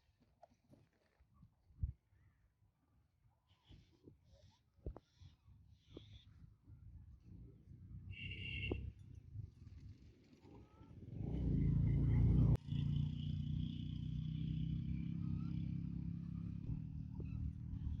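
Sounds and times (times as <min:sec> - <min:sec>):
vehicle engine rumble: 0:06.7 - 0:18.0.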